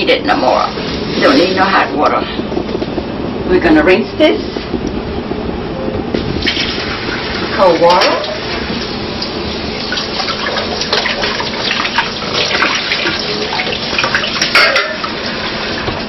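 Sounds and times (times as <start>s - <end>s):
clatter in sink: 6.4s - 8.4s, 9.9s - 16.0s
tap water running into sink: 6.4s - 16.0s.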